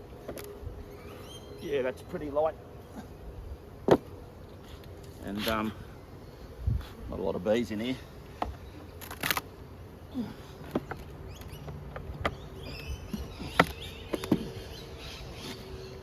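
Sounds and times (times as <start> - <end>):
honey bees buzzing: 0.0 - 16.0
hive frames clicking and knocking: 10.6 - 14.6.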